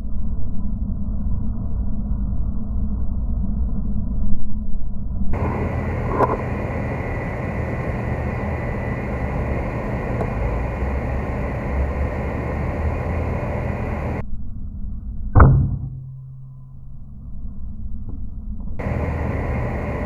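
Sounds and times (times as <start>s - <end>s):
wind buffeting microphone: 5.4s - 14.2s
suppressed air rifle shot: 15.4s - 16.2s.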